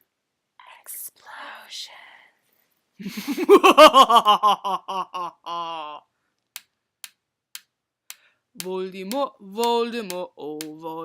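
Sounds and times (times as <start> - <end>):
person making wavering sound: 4.9 - 6.1
sharp ticking: 6.5 - 11.0.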